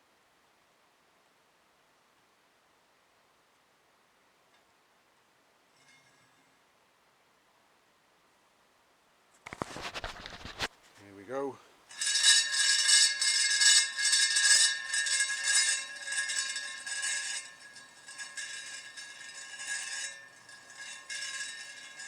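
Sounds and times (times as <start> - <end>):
metallic scraping hiss on spinning rim: 9.5 - 22.0.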